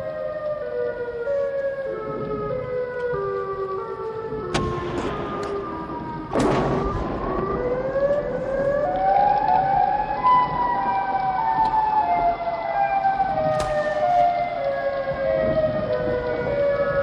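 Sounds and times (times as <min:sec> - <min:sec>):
air-raid sirens wailing: 0:00.0 - 0:17.0
sudden bang: 0:04.5 - 0:08.7
sharp crack: 0:04.5 - 0:10.3, 0:13.4 - 0:14.4.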